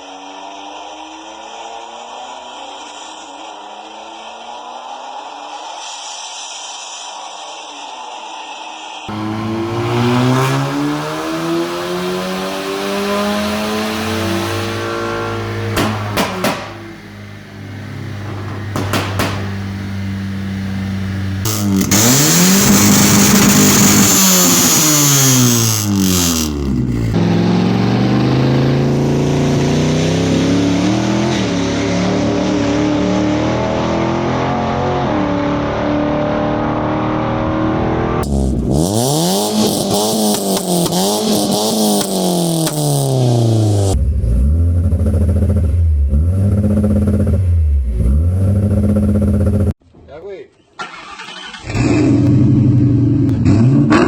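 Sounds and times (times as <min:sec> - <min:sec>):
car exhaust revving: 0:08.7 - 0:49.8, 0:51.0 - 0:54.0
exhaust pops: 0:15.7 - 0:20.0, 0:21.2 - 0:27.2.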